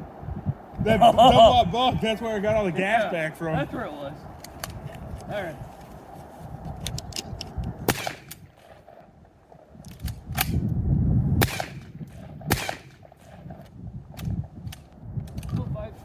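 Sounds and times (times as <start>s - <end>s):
shotgun shots with echo: 7.9s - 8.4s, 11.4s - 13.4s.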